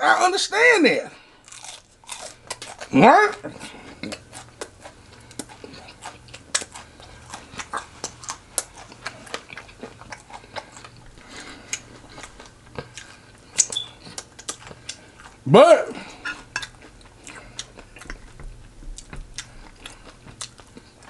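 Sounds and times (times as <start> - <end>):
chewing fried chicken: 1.2 - 21.0.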